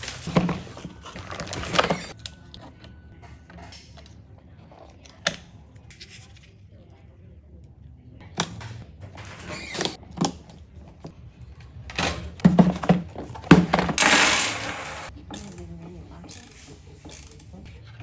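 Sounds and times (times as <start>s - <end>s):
computer parts clicking and rattling: 11.9s - 15.6s.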